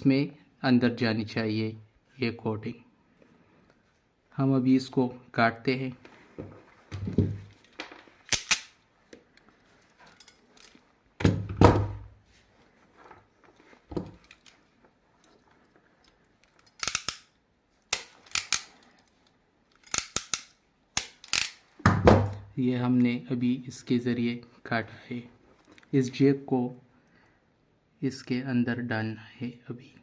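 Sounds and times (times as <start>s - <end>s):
cutting tool snipping wires: 16.7s - 17.3s, 17.9s - 18.7s, 19.9s - 21.6s.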